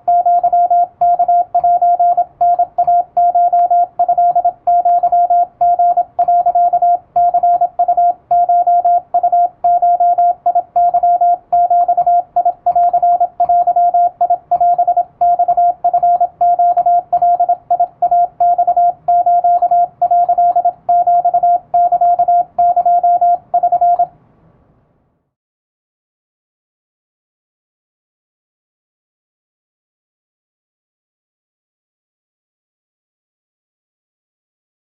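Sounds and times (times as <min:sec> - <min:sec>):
morse code tone: 0:00.0 - 0:24.1.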